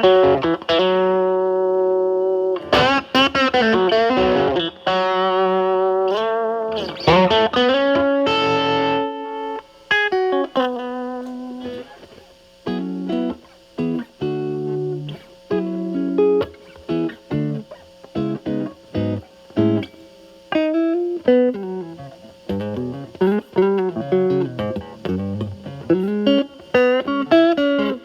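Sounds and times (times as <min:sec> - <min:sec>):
distorted electric guitar lead: 0:00.0 - 0:28.0
clean electric guitar notes: 0:20.6 - 0:28.0.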